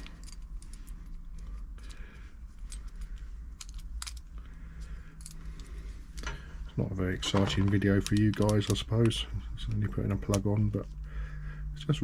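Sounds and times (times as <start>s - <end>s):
plug clicks and metallic rattles: 7.2s - 10.5s.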